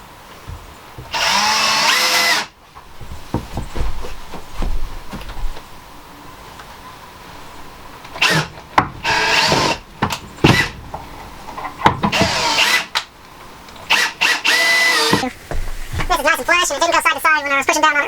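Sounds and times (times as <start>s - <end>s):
power drill driving screws: 1.1s - 2.6s, 8.2s - 9.8s, 10.4s - 10.8s, 12.1s - 13.0s, 13.9s - 15.3s.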